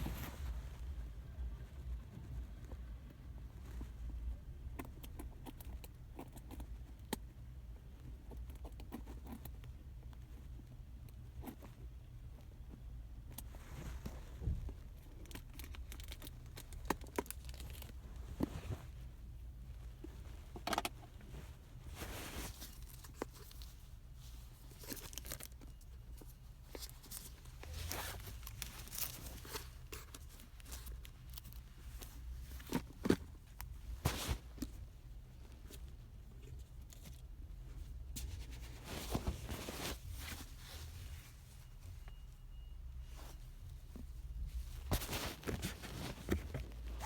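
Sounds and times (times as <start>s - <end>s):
packaging rustling and tearing: 26.7s - 33.3s, 44.8s - 47.0s.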